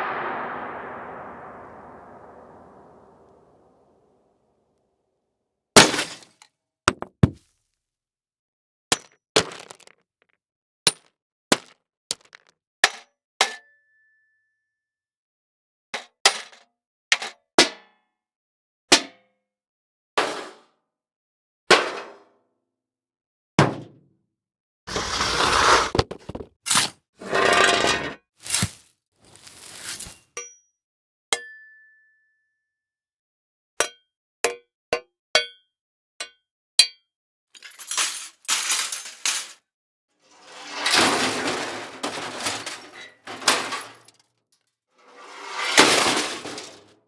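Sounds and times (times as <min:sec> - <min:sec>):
crashing breaking noise: 0:00.0 - 0:03.4, 0:28.4 - 0:30.2
impact hits and thuds: 0:06.9 - 0:07.4.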